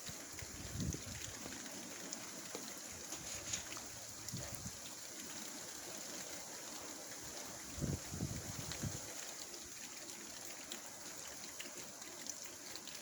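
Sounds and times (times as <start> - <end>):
wind gusts: 0.0 - 2.2, 2.9 - 5.5, 7.2 - 9.2
rain hissing: 0.0 - 9.8
rain drops ticking: 0.0 - 13.0.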